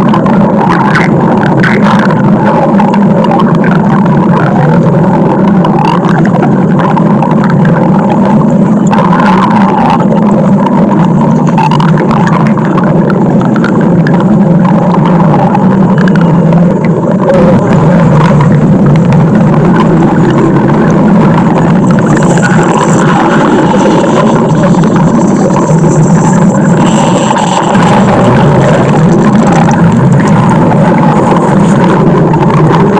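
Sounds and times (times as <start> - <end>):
stomach growl: 0.0 - 32.9.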